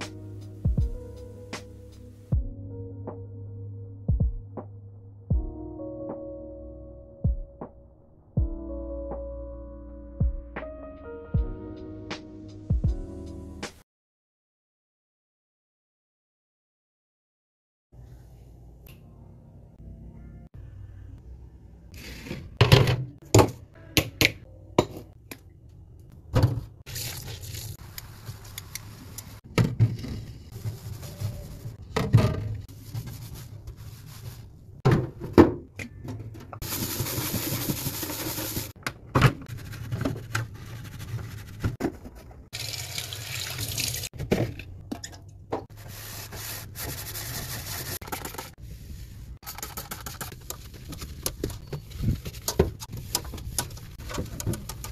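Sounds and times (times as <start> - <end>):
items knocking and clattering: 29.5 - 30.2, 31.8 - 32.7, 34.8 - 40.3, 44.1 - 45.7
tap water running and splashing: 42.5 - 44.1.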